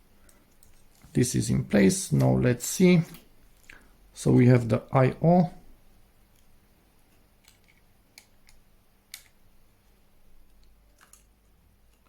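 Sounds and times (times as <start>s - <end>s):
small clicks and taps: 7.1s - 9.4s.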